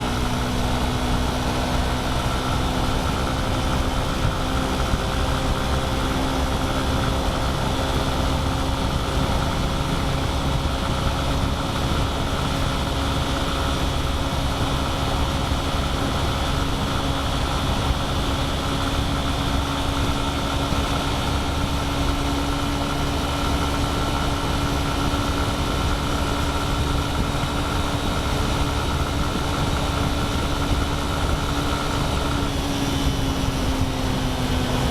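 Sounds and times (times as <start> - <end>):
road and wind noise: 0.0 - 34.9
vehicle engine cruising: 0.0 - 34.9.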